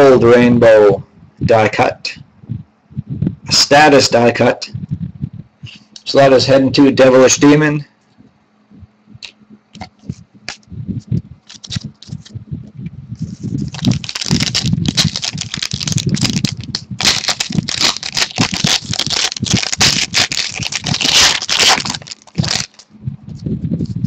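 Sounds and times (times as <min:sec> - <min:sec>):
plastic wrapper crinkling and tearing: 0:11.4 - 0:12.3, 0:13.3 - 0:22.9.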